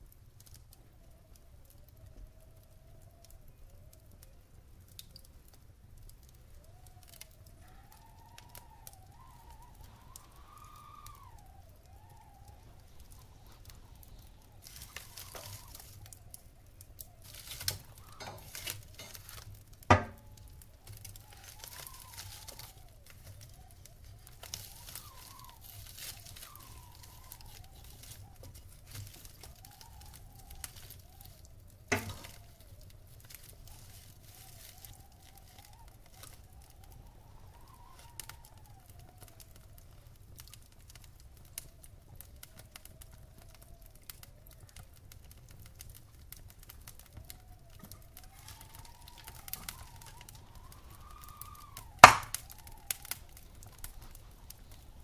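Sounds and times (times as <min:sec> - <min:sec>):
wood fire crackling: 0:00.0 - 0:55.0
faint wavering whistling tone: 0:00.6 - 0:05.4, 0:06.0 - 0:40.5, 0:46.7 - 0:55.0
loud fire pop: 0:51.6 - 0:52.8.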